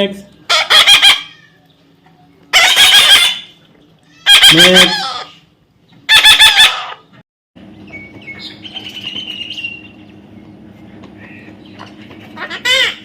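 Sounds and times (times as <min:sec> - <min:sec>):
parrot squawking: 0:00.5 - 0:01.7, 0:02.5 - 0:05.5, 0:06.1 - 0:07.1, 0:12.3 - 0:13.0
steady low hum: 0:07.1 - 0:13.0
faint high chirping calls: 0:07.7 - 0:10.6.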